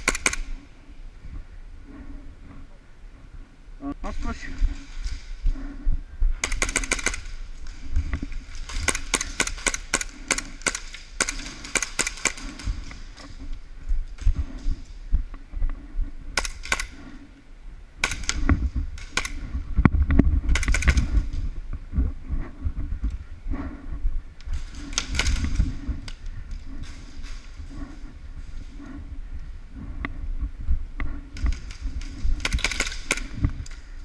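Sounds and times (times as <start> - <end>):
airsoft guns firing bursts: 0.0 - 0.6, 6.4 - 7.4, 8.5 - 12.9, 24.6 - 25.6, 31.4 - 33.5.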